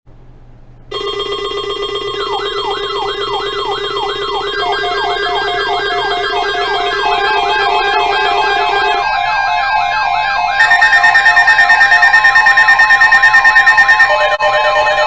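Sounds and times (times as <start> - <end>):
steady chord of alarm tones: 0.9 - 15.0
siren pitch sweeps: 2.3 - 15.0.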